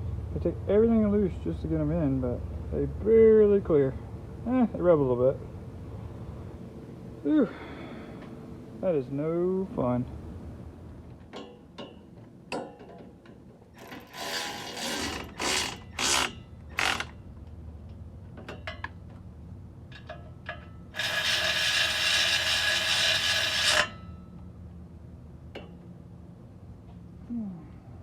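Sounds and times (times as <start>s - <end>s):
ratchet wrench ratcheting: 13.8s - 17.2s, 21.0s - 24.0s.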